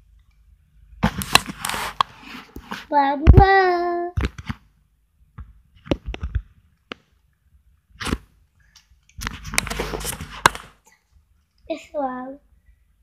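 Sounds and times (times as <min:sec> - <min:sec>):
rustling and scraping: 0:01.0 - 0:03.0, 0:08.0 - 0:11.2.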